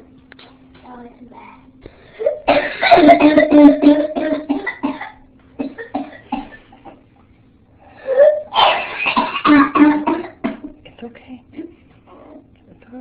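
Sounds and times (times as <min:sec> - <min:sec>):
girl coughing in fits: 0:02.2 - 0:07.0, 0:08.2 - 0:10.8.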